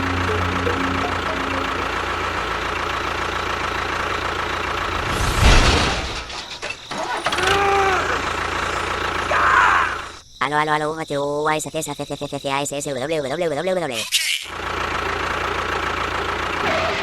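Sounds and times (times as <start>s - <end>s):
rising and falling tone: 0.0s - 5.3s
engine running: 0.0s - 10.2s, 14.5s - 17.0s.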